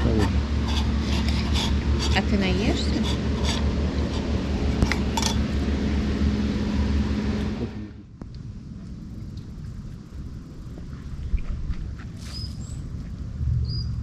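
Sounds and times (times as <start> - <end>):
rushing noise with low hum: 0.0 - 14.0
dishes clinking: 3.0 - 5.5.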